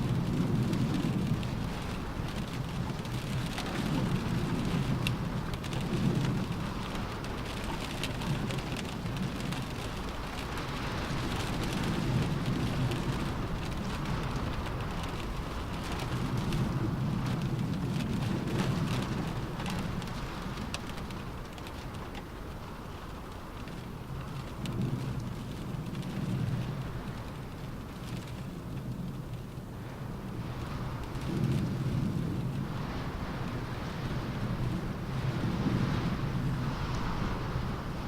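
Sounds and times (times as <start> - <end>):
rain on a car roof: 0.0 - 38.0
low rumble: 30.9 - 38.0.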